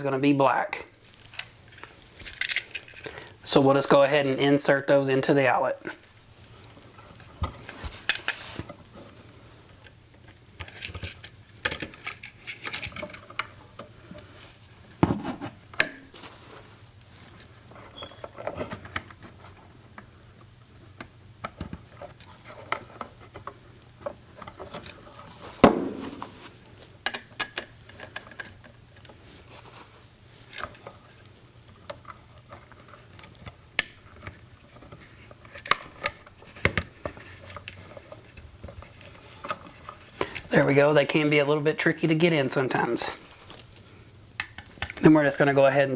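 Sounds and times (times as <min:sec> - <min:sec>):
louder knock: 0:25.6 - 0:26.2
wire clicking and scraping on outlet: 0:30.4 - 0:40.5.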